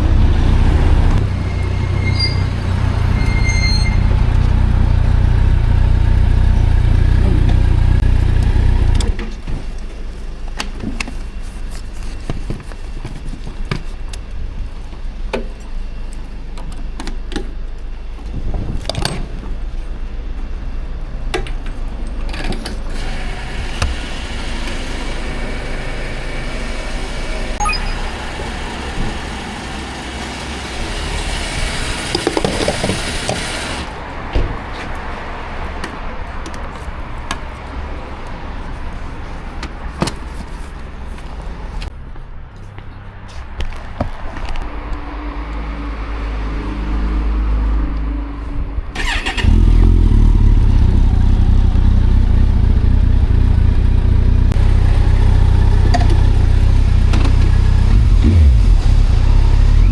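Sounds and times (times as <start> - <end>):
motorcycle engine idling: 3.9 - 9.2, 49.0 - 59.9.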